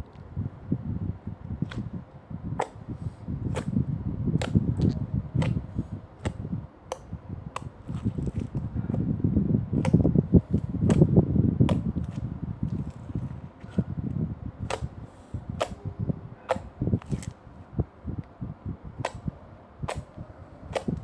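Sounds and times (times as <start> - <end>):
slime squelching: 1.6 - 1.9, 4.4 - 8.8, 9.8 - 15.8, 16.4 - 17.4
sharp clicks: 19.0 - 19.3, 19.9 - 21.0.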